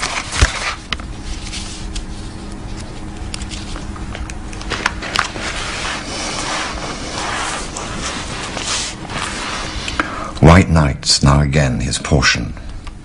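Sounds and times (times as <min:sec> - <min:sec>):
book pages rustling: 0:00.0 - 0:10.0
steady hiss: 0:05.0 - 0:10.6.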